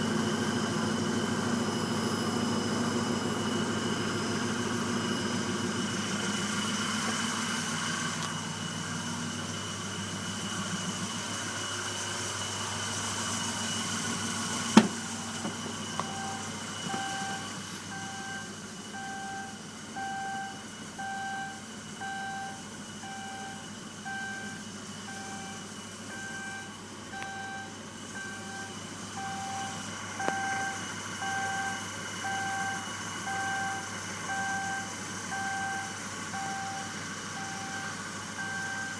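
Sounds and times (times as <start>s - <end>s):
car engine running: 0.0s - 38.9s
electronic beeps: 16.0s - 38.9s.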